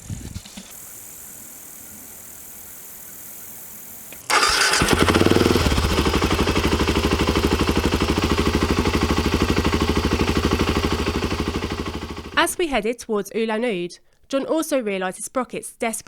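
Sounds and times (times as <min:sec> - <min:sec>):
faint steady hiss: 0:00.0 - 0:04.4
motorcycle engine starting and idling: 0:04.1 - 0:12.6.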